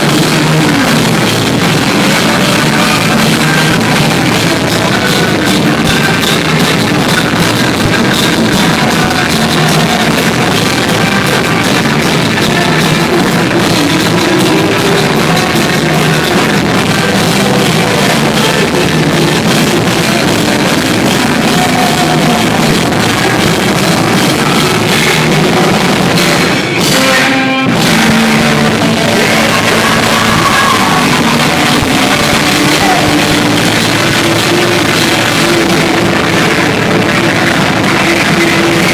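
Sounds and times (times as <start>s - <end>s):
live rock band playing: 0.0s - 38.9s.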